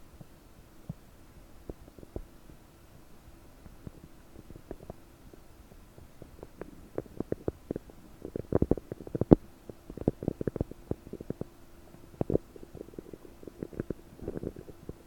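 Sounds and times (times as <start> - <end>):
stomach gurgling: 3.7 - 15.0.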